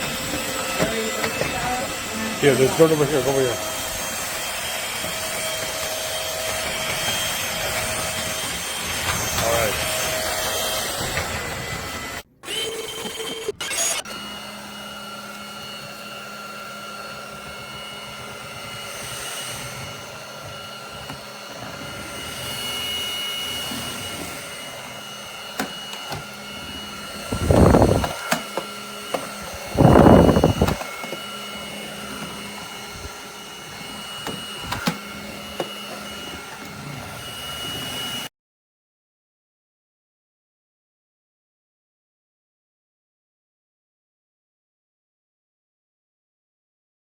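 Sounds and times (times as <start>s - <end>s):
stick vacuum motor whine: 0.0s - 38.3s.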